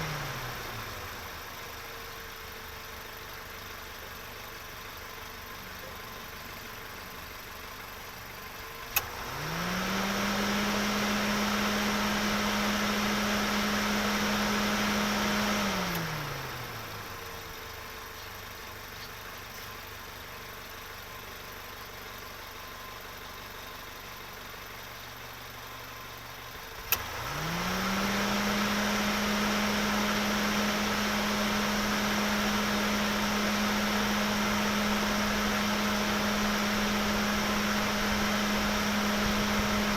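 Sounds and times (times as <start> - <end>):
car engine revving: 9.0 - 17.2, 26.8 - 39.9.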